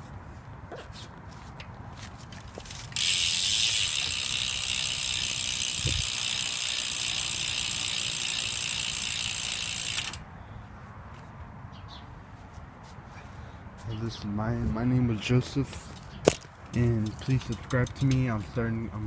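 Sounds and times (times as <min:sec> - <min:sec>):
bicycle hub freewheeling buzz: 0:02.9 - 0:10.2.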